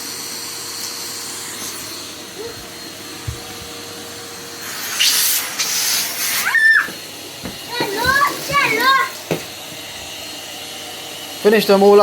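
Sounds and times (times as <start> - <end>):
vacuum cleaner running: 0.0 - 12.0
dull knock: 6.9 - 8.2.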